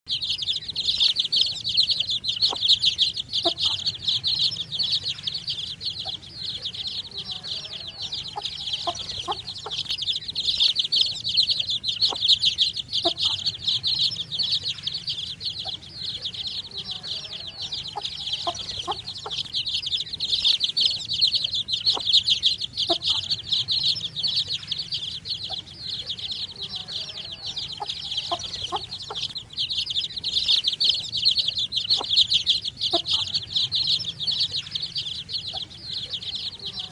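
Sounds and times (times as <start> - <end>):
baby chicks cheeping: 0.0 - 36.9.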